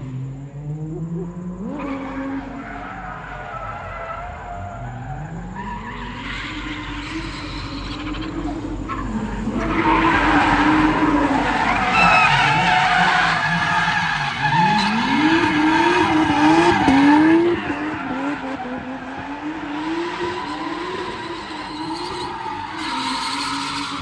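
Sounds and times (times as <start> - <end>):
car engine revving: 0.0 - 24.0
tyres squealing: 6.5 - 19.8, 20.4 - 24.0.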